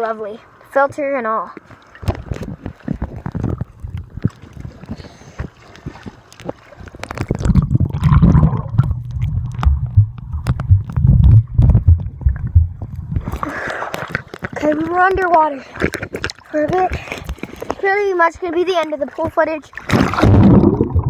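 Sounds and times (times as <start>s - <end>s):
low rumble of water movement: 1.5s - 21.0s
underwater clicks and knocks: 1.6s - 17.8s
bubbling water: 2.0s - 17.8s, 19.8s - 21.0s.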